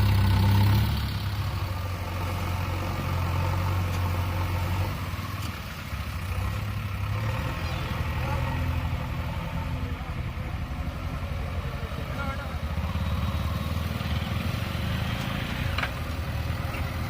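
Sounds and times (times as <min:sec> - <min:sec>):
diesel engine running at low revs: 0:00.0 - 0:17.0.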